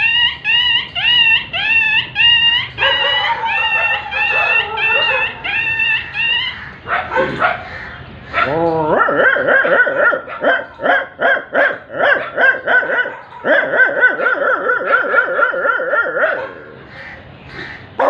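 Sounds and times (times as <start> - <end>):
man imitating dog barks: 8.3 - 16.6.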